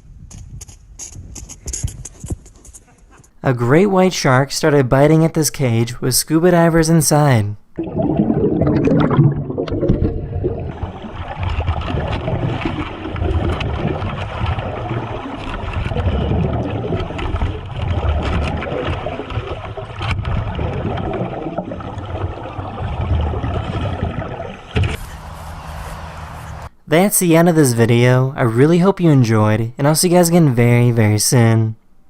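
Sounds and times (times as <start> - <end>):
water sloshing and gurgling: 7.6 - 25.6.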